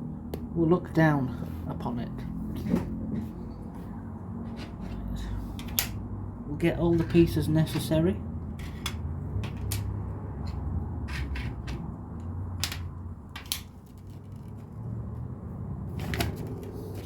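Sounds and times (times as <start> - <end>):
plastic pieces clicking: 12.6 - 14.6.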